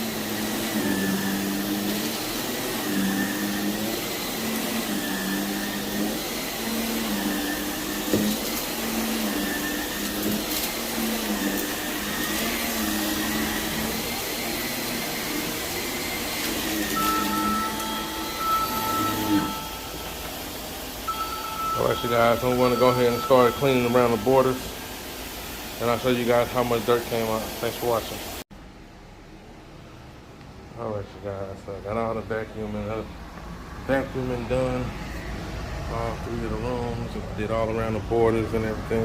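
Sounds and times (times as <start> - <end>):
vacuum cleaner running on carpet: 0.0 - 28.4.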